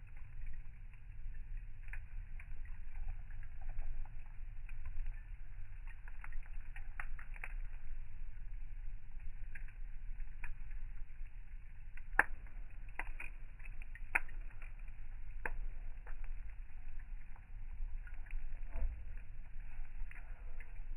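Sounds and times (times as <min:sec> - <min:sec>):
burning wood popping: 0:00.0 - 0:20.9
campfire crackling: 0:00.0 - 0:20.9
steady low rumble: 0:00.0 - 0:20.9.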